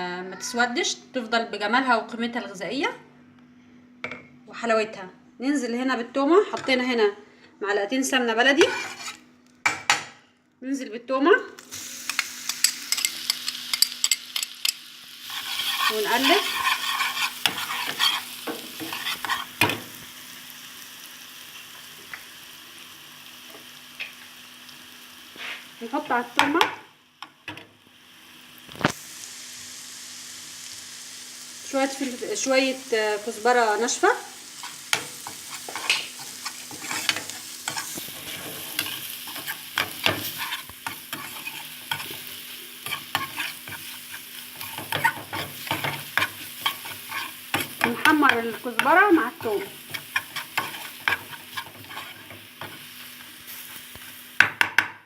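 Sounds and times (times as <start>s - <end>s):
garlic sizzling in a pan: 8.4s - 9.2s, 11.5s - 54.7s
spoon scraping a pan: 8.6s - 9.2s, 12.1s - 19.8s, 34.6s - 54.1s.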